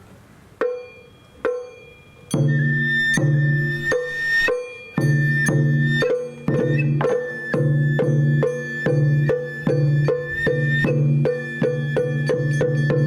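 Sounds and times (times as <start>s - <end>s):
drum strokes: 0.6s - 13.0s
high bamboo flute melody: 0.8s - 13.0s.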